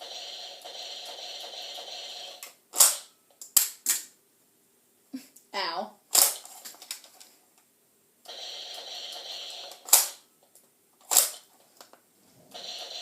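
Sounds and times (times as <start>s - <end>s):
toy rifle sharp clacks: 1.4s - 4.1s, 6.2s - 6.5s, 8.8s - 10.2s, 11.1s - 11.5s
toy rifle rasping: 12.6s - 13.0s.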